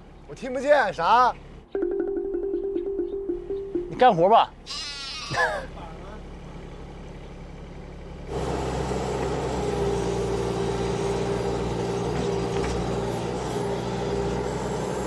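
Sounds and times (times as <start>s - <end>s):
engine running steadily: 5.4s - 15.0s.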